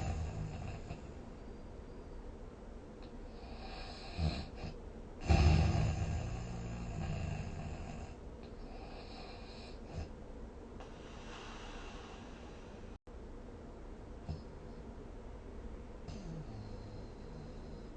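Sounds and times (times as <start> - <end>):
person snoring: 3.4 - 10.1
breathing noises: 10.8 - 13.0.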